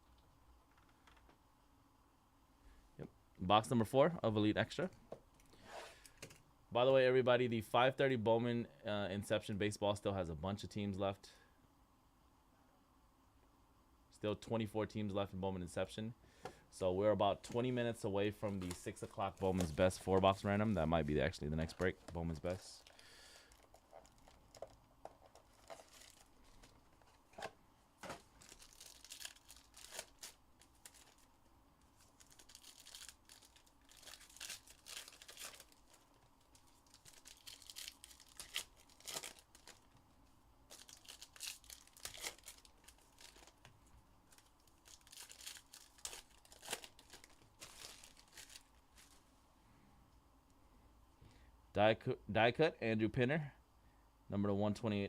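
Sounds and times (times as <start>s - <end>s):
wrappers torn and crinkled: 22.4s - 26.7s, 28.3s - 31.3s, 31.9s - 39.9s, 40.7s - 43.6s, 44.3s - 49.2s.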